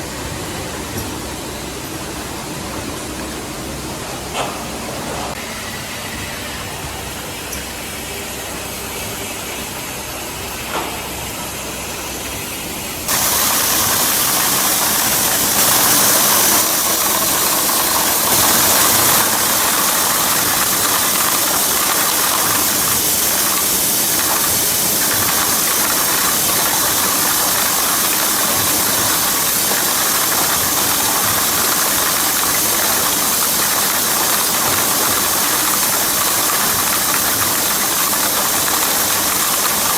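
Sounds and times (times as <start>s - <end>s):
sorting machine humming and hissing: 0.0s - 39.9s.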